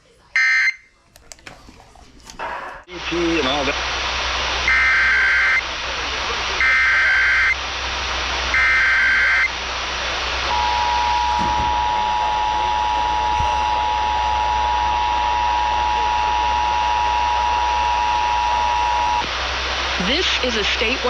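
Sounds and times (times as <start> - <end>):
radio hiss: 2.4 - 21.0.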